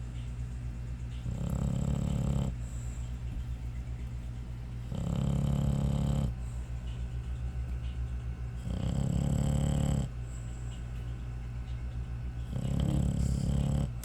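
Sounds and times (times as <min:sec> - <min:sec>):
low rumble of breathing: 0:01.1 - 0:14.0
dog snoring: 0:01.2 - 0:02.9, 0:04.9 - 0:06.5, 0:08.6 - 0:10.4, 0:12.4 - 0:14.0.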